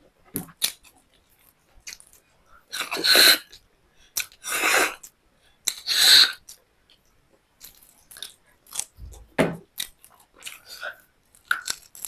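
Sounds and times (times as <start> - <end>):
chewing clicks: 11.4 - 12.0.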